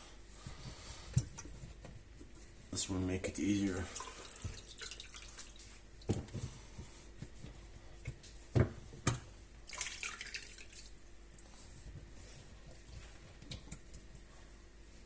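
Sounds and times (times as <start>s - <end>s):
water dripping and splashing: 3.9s - 5.7s, 9.7s - 10.9s
sponge soaking up water: 9.7s - 10.9s.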